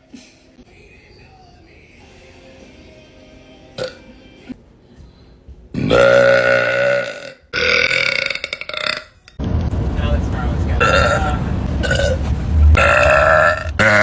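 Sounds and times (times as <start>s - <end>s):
woman burping: 5.8s - 9.1s, 12.8s - 14.0s.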